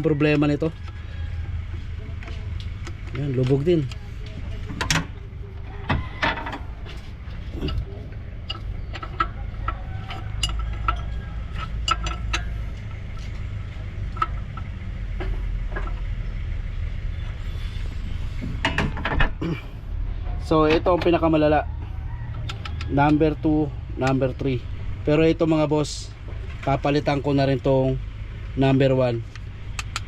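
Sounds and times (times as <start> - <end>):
steady low rumble: 0.0 - 30.0
hand tools clinking on metal: 7.6 - 13.4.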